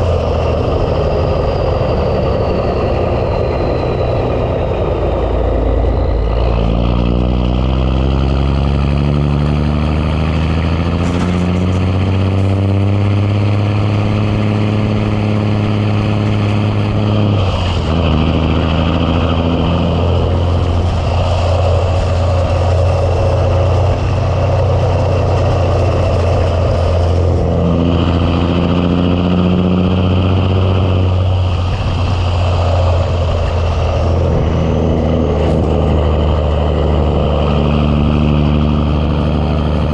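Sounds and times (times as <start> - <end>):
diesel truck engine revving: 0.0 - 39.9.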